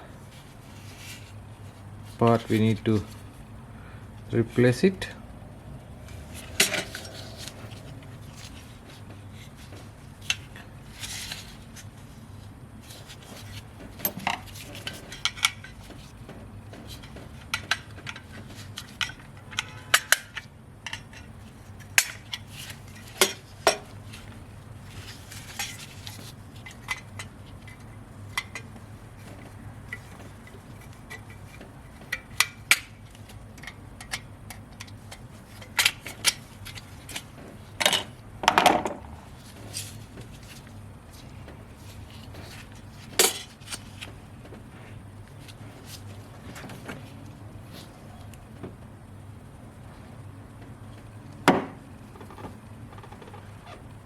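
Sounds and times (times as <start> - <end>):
faint low hum: 0.0 - 20.0.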